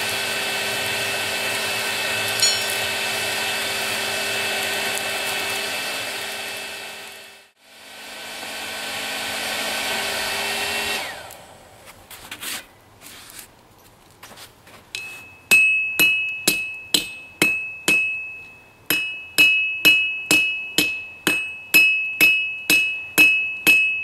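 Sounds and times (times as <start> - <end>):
hair dryer whirring: 0.0 - 11.7
light metallic clinks: 2.4 - 2.9.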